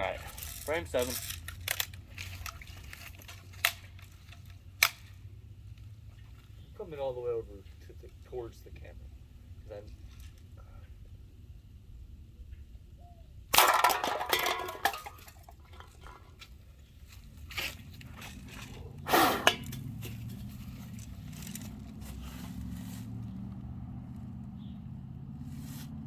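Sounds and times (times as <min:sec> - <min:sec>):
cans clattering and scraping: 0:13.6 - 0:16.5, 0:17.5 - 0:22.0.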